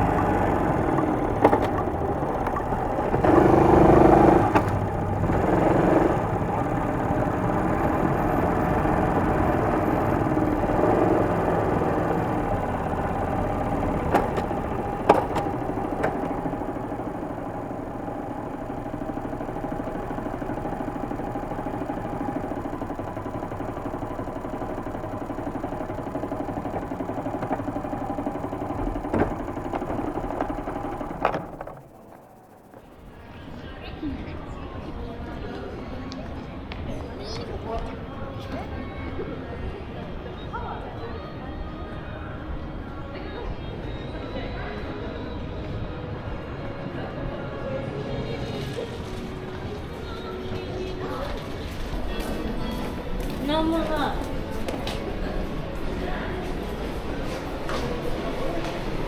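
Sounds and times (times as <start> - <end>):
motorcycle engine running: 0.0 - 33.8.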